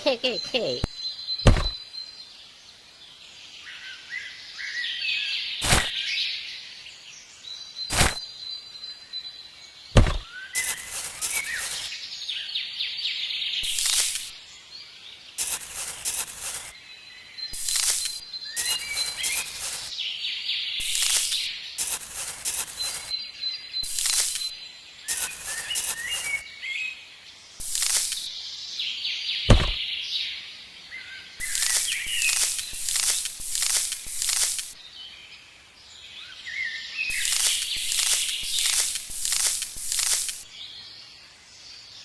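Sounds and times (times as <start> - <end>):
birds chirping: 0.0 - 2.8, 7.4 - 12.5, 13.5 - 41.2
sharp knocks: 1.4 - 1.8, 10.0 - 10.2, 29.5 - 29.8
short hissy strokes: 5.6 - 5.9, 7.9 - 8.2, 13.6 - 14.3, 15.4 - 16.7, 17.6 - 19.9, 20.8 - 23.0, 23.8 - 24.5, 27.6 - 28.3, 31.4 - 34.8, 37.1 - 40.5.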